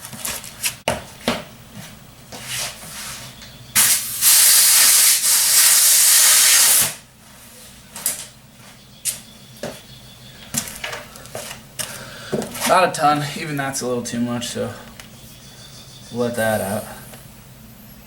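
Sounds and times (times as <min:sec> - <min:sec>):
air hissing into inner tube: 0:03.8 - 0:07.0.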